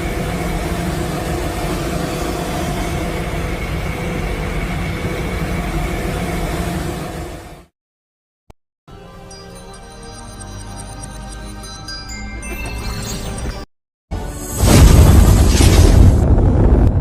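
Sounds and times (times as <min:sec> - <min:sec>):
dense rumbling: 0:14.6 - 0:17.0.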